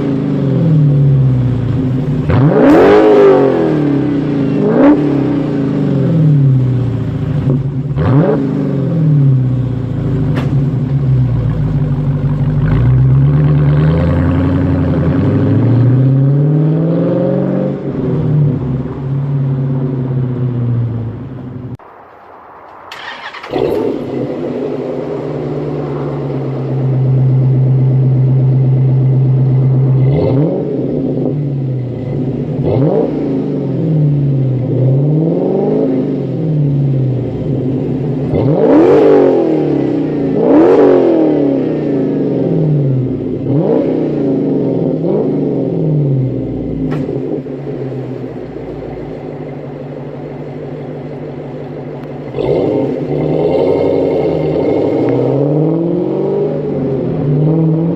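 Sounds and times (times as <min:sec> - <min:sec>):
engine revving: 0:00.0 - 0:21.2, 0:22.9 - 0:49.2, 0:52.0 - 0:57.9
engine idling: 0:09.4 - 0:13.6, 0:46.2 - 0:53.1
engine starting: 0:22.9 - 0:24.0.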